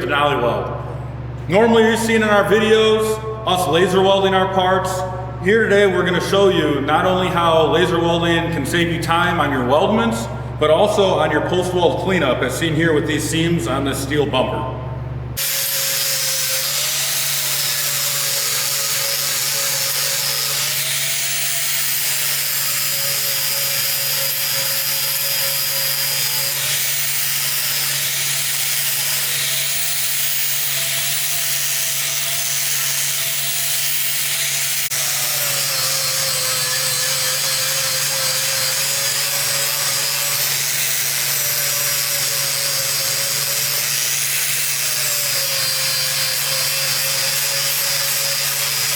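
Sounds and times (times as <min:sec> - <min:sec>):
handheld grinder on steel: 0:15.4 - 0:48.9.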